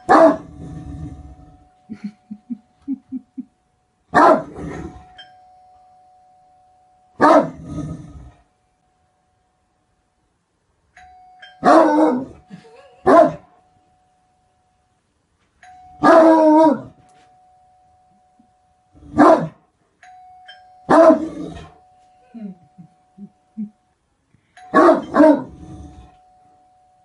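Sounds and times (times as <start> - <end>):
dog barking deeply: 0.1 - 0.6, 4.2 - 4.7, 7.2 - 7.6, 19.2 - 19.6
faint steady tone: 4.8 - 27.0.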